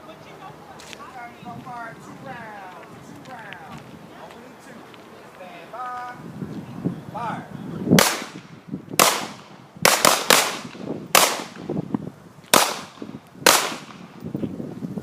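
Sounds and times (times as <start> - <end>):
handgun shots: 8.0 - 11.7, 12.5 - 14.0.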